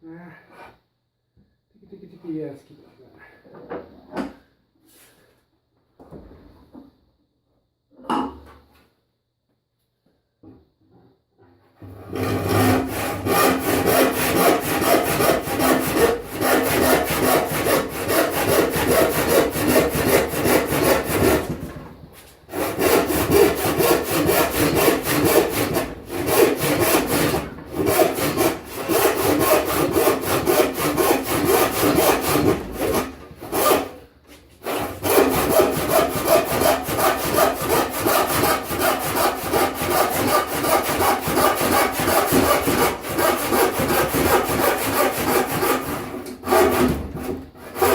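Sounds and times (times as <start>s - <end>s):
hand saw cutting wood: 11.9s - 47.9s.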